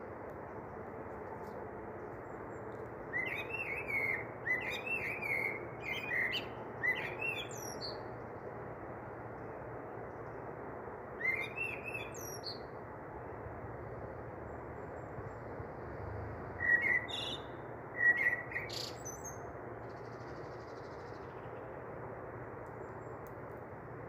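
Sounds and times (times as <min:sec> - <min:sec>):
steady low hiss: 0:00.0 - 0:06.8.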